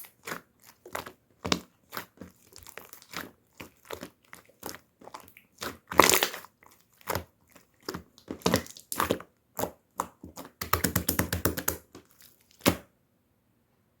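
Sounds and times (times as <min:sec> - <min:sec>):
slime crackling pops: 0:05.6 - 0:06.4.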